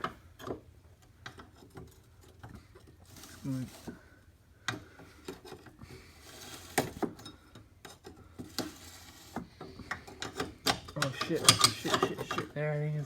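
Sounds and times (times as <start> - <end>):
metal hand tools clinking: 10.2 - 12.6.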